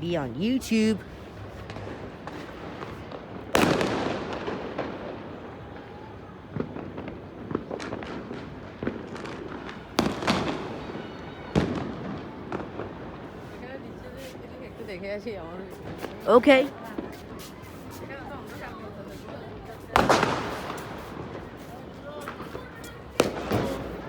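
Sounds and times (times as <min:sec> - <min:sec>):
fireworks small cracks: 0:00.0 - 0:05.3, 0:06.5 - 0:14.2, 0:15.7 - 0:24.0
fireworks loud bangs: 0:01.6 - 0:05.4, 0:06.5 - 0:13.4, 0:19.3 - 0:24.0.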